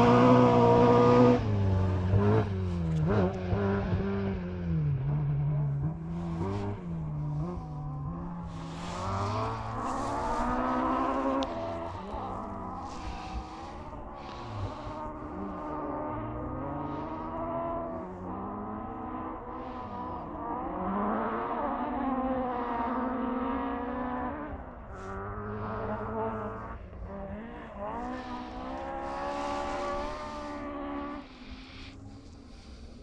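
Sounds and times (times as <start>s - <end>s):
rally car engine revving: 0.0s - 33.0s
road and tyre rumble: 0.0s - 33.0s.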